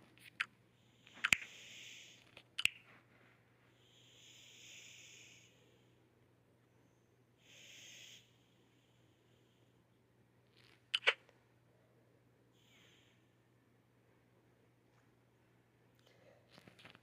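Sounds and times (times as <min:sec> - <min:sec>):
hissy breathing: 0:00.7 - 0:02.4, 0:03.0 - 0:10.0, 0:12.5 - 0:13.5
sharp clicks: 0:10.9 - 0:11.2.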